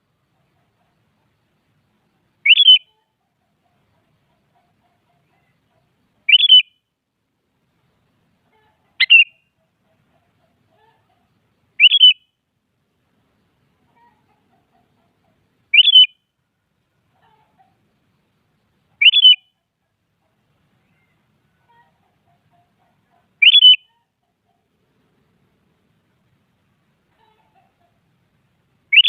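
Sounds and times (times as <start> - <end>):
bulbul calling: 2.4 - 6.8, 8.6 - 12.3, 13.9 - 16.2, 18.9 - 19.6, 20.8 - 24.7.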